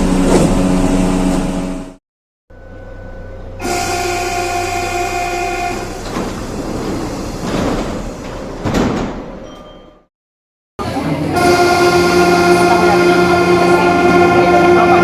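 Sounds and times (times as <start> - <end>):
standing train humming: 0.0 - 2.0, 2.6 - 8.3, 10.8 - 15.0
train door warning tone: 2.5 - 6.3, 10.9 - 15.0
train clunk: 5.8 - 10.0.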